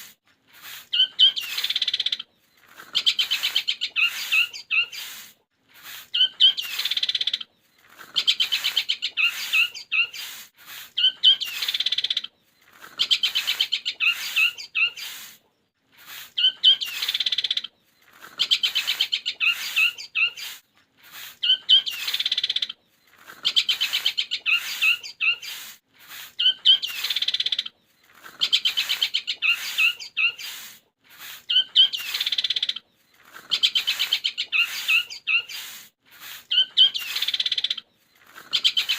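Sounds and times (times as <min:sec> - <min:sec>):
shrike singing chattering trills: 0:00.8 - 0:05.2, 0:06.1 - 0:15.3, 0:16.3 - 0:20.6, 0:21.3 - 0:25.6, 0:26.4 - 0:30.6, 0:31.5 - 0:35.7.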